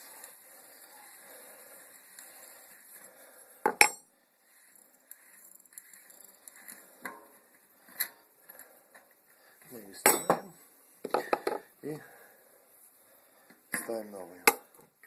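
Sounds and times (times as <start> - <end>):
metal wrench clanking: 3.7 - 4.0, 10.0 - 10.6.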